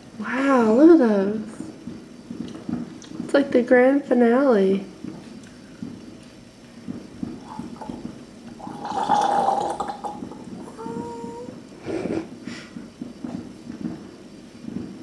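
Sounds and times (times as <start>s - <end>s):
fireworks crackling: 0.7s - 5.2s, 6.8s - 11.6s
fireworks popping: 6.8s - 11.5s, 12.2s - 15.0s.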